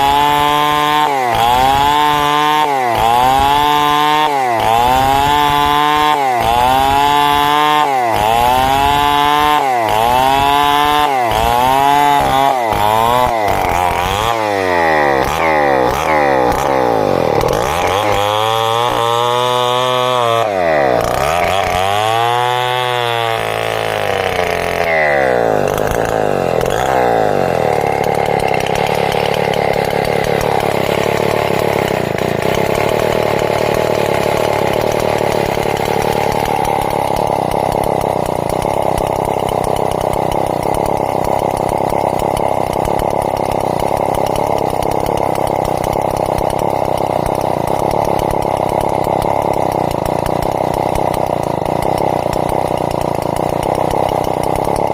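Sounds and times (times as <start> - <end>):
chainsaw revving and cutting: 0.0 - 54.9.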